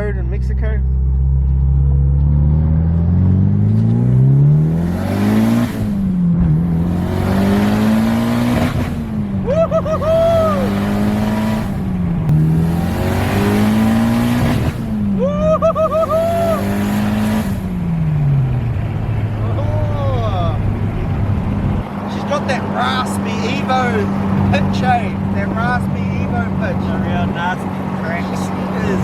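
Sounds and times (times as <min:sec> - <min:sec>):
car engine accelerating hard: 0:00.0 - 0:29.0.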